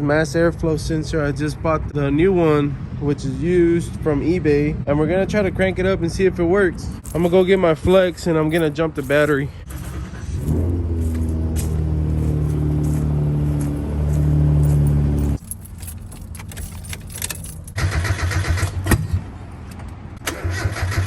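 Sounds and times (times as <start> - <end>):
car starter cranking engine: 9.6 - 10.9, 16.0 - 19.2, 20.2 - 21.0.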